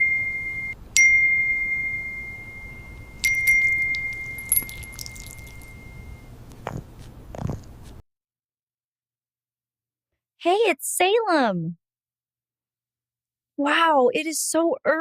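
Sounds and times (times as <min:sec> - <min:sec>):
high chime ringing: 0:01.0 - 0:06.2
light high tinkles: 0:01.0 - 0:06.3.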